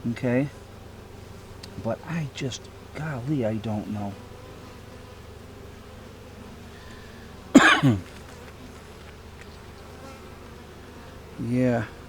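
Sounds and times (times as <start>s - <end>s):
bees buzzing: 0.0s - 12.0s
person coughing: 7.6s - 8.1s.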